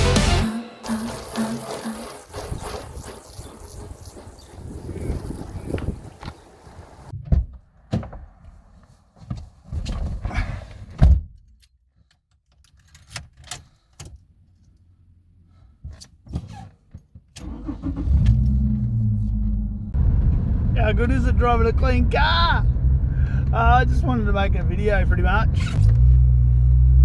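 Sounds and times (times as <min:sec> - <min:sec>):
car engine starting and running: 0:17.4 - 0:27.0.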